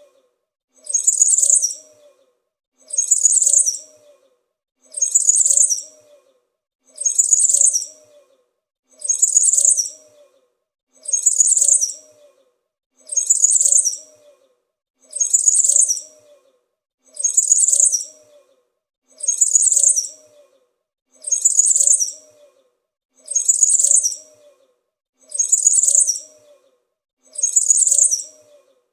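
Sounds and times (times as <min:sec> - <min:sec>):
songbird chirping warble: 0:00.9 - 0:02.2, 0:03.0 - 0:04.3, 0:05.0 - 0:06.4, 0:07.0 - 0:08.4, 0:09.1 - 0:10.5, 0:11.1 - 0:12.5, 0:13.2 - 0:14.5, 0:15.2 - 0:16.6, 0:17.2 - 0:18.6, 0:19.2 - 0:20.7, 0:21.3 - 0:22.7, 0:23.3 - 0:24.6, 0:25.4 - 0:26.7, 0:27.4 - 0:28.9.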